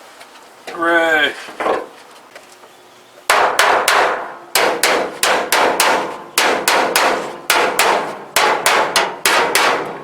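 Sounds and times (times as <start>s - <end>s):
hammer on sheet metal: 3.3s - 10.0s.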